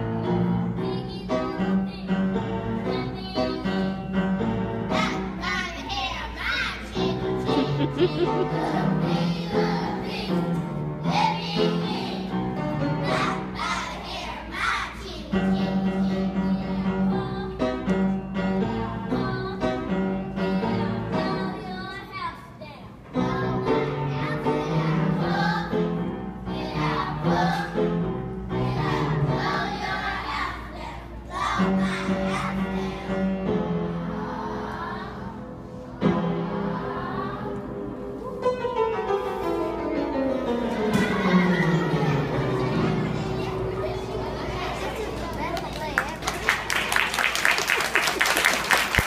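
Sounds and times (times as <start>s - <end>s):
piano accompaniment: 0.0s - 22.2s, 23.0s - 49.0s
children singing: 4.9s - 17.7s, 23.2s - 37.9s, 40.4s - 45.7s
children singing in unison: 23.2s - 37.8s.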